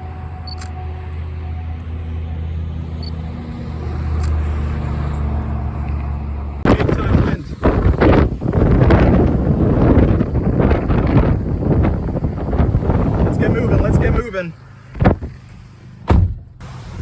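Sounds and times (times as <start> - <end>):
wind buffeting microphone: 6.6 - 15.4.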